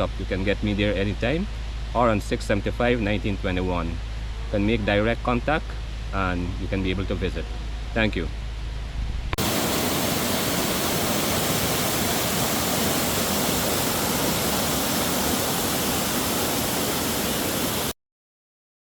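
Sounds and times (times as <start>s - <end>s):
waterfall roaring: 9.4s - 18.0s.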